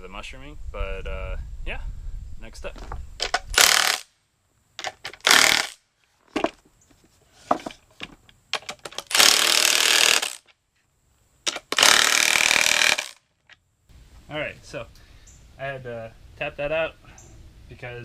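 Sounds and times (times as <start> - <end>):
power tool bursts on steel: 3.5 - 4.1, 5.1 - 5.8, 9.0 - 10.5, 11.5 - 13.2.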